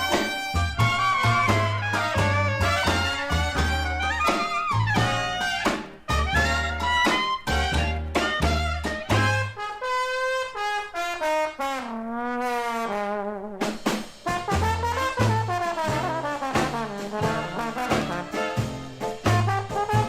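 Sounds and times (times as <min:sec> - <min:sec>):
bass line: 0:00.0 - 0:09.6, 0:14.3 - 0:20.0
brass jazz band music: 0:00.0 - 0:20.0.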